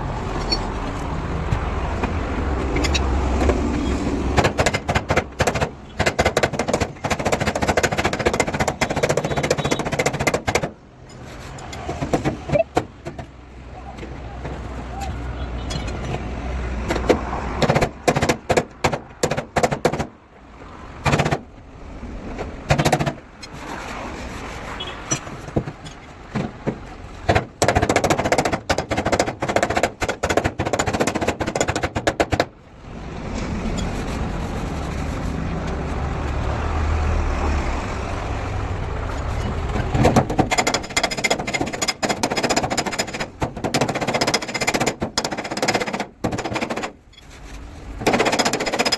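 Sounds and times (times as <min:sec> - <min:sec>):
rapid impacts on metal: 0:04.3 - 0:13.4, 0:15.8 - 0:20.2, 0:21.0 - 0:21.5, 0:22.6 - 0:23.7, 0:25.1 - 0:32.6, 0:39.2 - 0:48.9.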